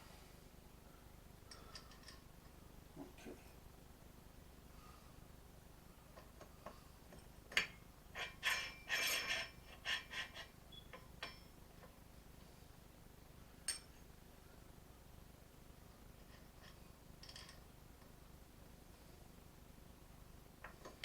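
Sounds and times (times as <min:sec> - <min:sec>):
tools and small parts clicking: 0:01.5 - 0:02.2.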